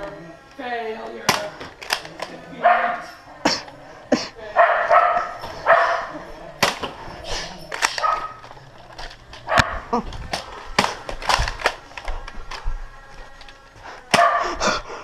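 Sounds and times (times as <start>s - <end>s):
darts striking: 14.1s - 14.4s.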